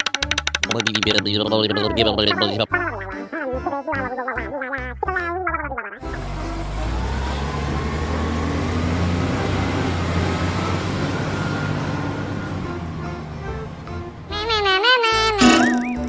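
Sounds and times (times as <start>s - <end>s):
truck engine rumbling: 5.1s - 16.0s.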